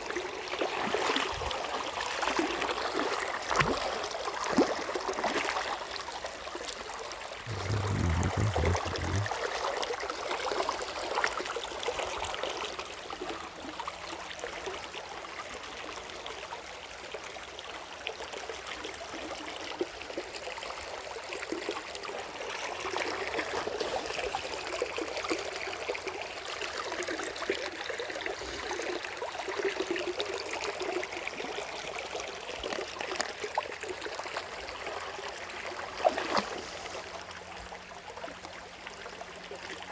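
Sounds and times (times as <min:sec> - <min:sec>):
water rushing over rocks: 0:07.5 - 0:09.3.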